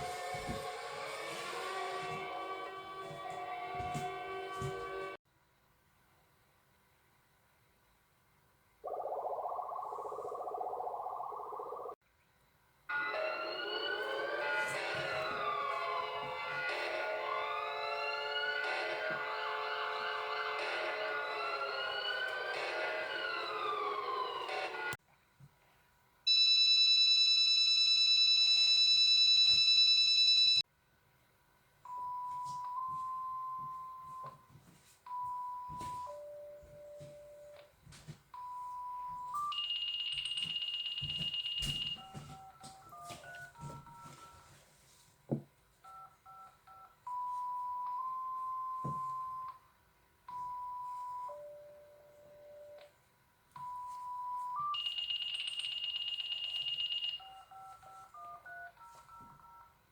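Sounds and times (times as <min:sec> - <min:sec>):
siren-like electronic sweep: 0:08.9 - 0:12.0, 0:13.0 - 0:25.0.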